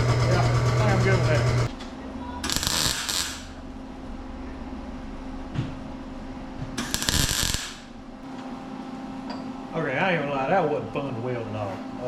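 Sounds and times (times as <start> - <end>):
steady low hum: 0.0 - 12.0
welding crackling hiss: 2.4 - 3.6, 6.8 - 8.0.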